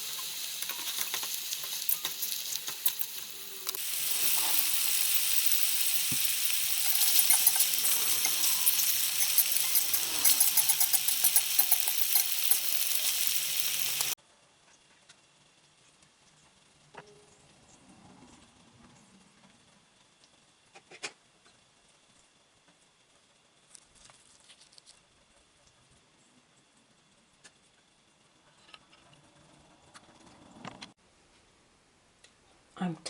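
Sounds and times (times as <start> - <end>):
food sizzling in hot oil: 0.0 - 14.2.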